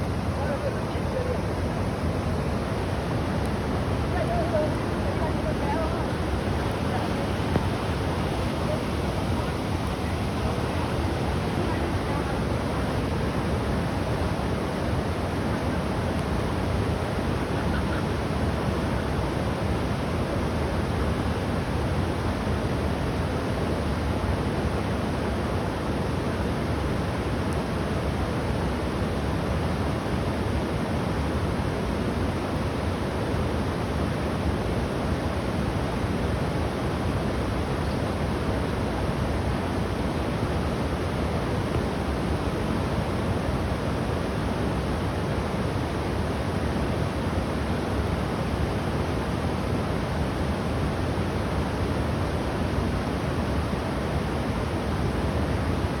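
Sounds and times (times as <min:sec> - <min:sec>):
floodwater rushing: 0:00.0 - 0:21.7
flooded river rushing: 0:00.0 - 0:56.0.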